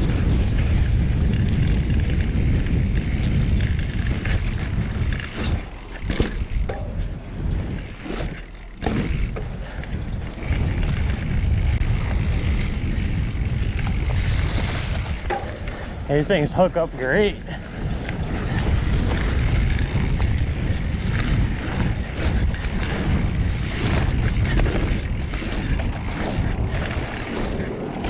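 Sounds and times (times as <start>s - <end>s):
bike knocks and clatters: 0.0s - 28.0s
wind and rolling tyres rushing: 0.0s - 28.0s.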